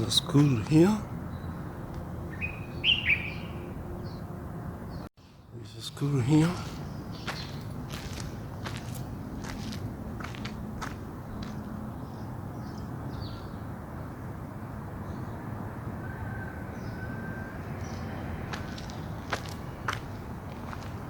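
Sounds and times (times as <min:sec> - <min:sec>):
footsteps on the ground: 0:06.3 - 0:11.8, 0:17.8 - 0:21.0.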